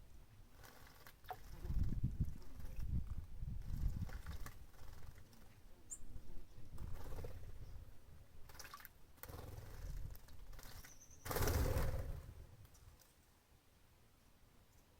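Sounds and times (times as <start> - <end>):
birds splashing water: 8.5 - 9.4
high bird chirp: 10.8 - 11.4.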